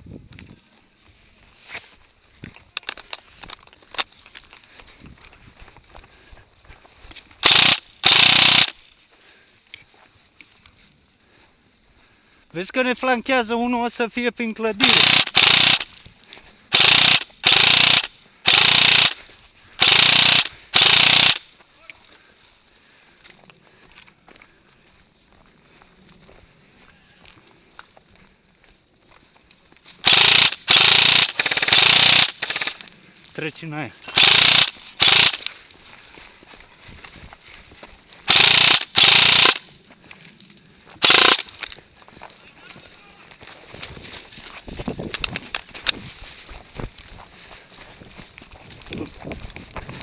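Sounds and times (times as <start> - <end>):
airsoft rifle firing bursts: 7.4 - 8.8, 14.8 - 15.9, 16.7 - 19.2, 19.8 - 21.5, 30.0 - 32.8, 34.1 - 35.5, 38.3 - 39.6, 41.0 - 41.5.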